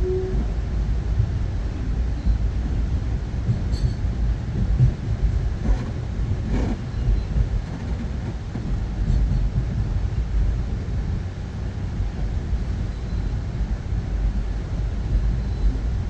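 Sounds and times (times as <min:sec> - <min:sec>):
passenger train rumble: 0:00.0 - 0:16.0.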